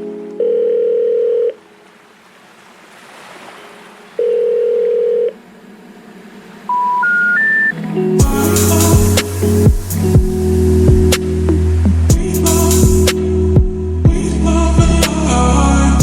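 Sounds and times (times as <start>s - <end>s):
telephone beeps: 4.2s - 5.4s, 6.7s - 7.8s
rising three-tone signal: 6.7s - 11.7s.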